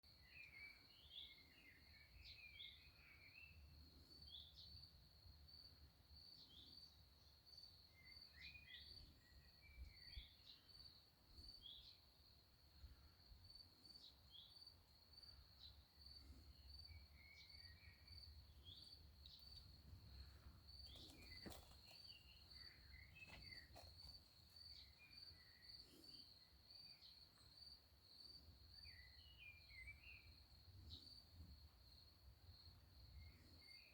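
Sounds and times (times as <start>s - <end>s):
bird chirps: 16.7s - 27.6s, 28.8s - 31.1s.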